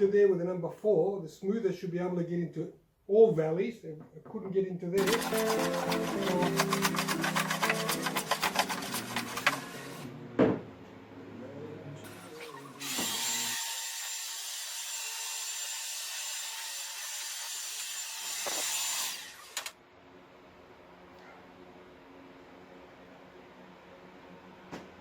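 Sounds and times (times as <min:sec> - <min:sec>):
background music: 0:05.0 - 0:10.0
rasping rub: 0:05.0 - 0:10.0
hand plane shaving wood: 0:05.0 - 0:10.1.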